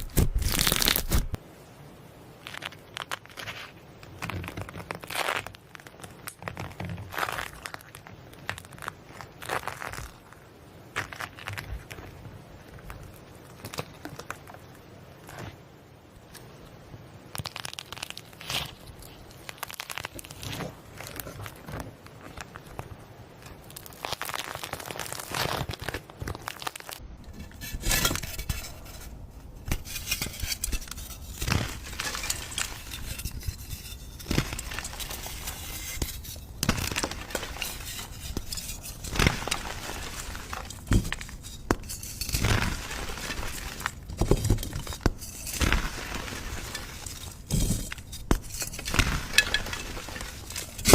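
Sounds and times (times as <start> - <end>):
slime crackling and popping: 0.0 - 1.4, 2.4 - 10.4, 17.3 - 22.8, 23.4 - 27.0, 34.2 - 50.9.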